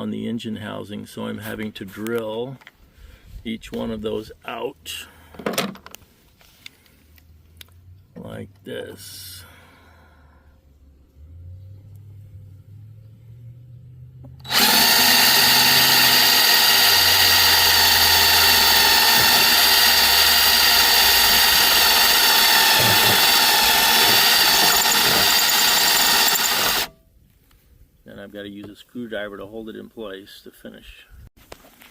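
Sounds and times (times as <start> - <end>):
power drill drilling: 14.4 - 26.9.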